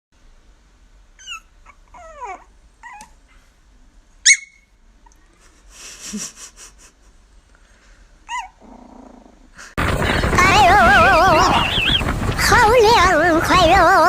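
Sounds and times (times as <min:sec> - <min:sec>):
animal whimpering and yelping: 0:01.2 - 0:03.2, 0:08.3 - 0:09.2.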